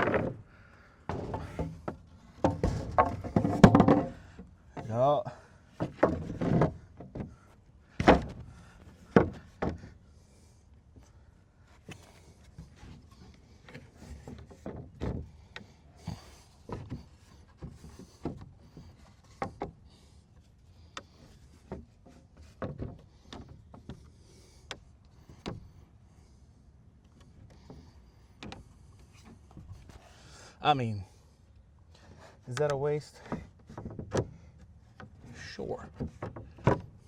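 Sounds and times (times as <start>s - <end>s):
wood scraping on wood: 0.0s - 10.4s, 11.7s - 26.2s, 27.1s - 31.4s, 32.0s - 37.0s
wooden boards knocking: 1.1s - 5.0s, 5.8s - 7.3s, 8.0s - 9.9s, 35.8s - 37.0s.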